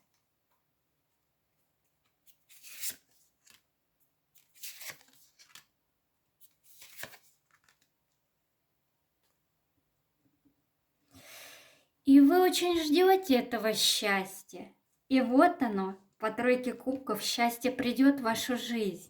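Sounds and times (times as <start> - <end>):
cards rustling: 2.0 - 3.7, 4.3 - 5.8, 6.4 - 8.0.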